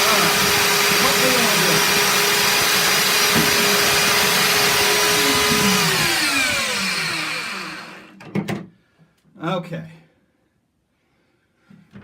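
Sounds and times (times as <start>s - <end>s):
belt sanders whining down: 0.0s - 8.2s.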